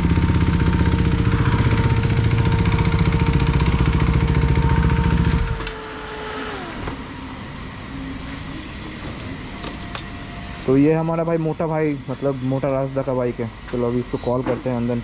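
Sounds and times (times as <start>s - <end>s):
motorcycle engine idling: 0.0s - 5.6s
whine dropping in pitch: 0.0s - 12.5s.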